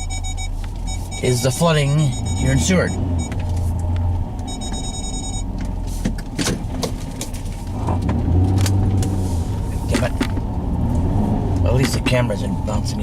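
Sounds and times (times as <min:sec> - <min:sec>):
short high electronic beep: 0:00.0 - 0:03.3, 0:04.5 - 0:05.5
car engine idling: 0:00.0 - 0:13.0.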